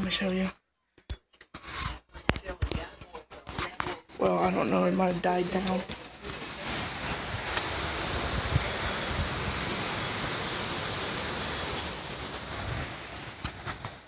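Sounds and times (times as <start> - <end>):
strong wind blowing: 6.7 - 14.0.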